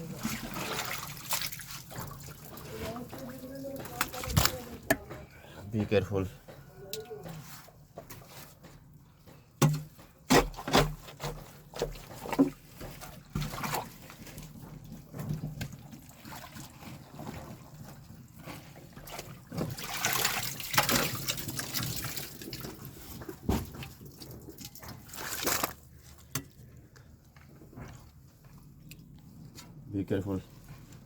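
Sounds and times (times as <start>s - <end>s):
drain water trickling and splashing: 0.0s - 5.1s, 11.1s - 29.6s.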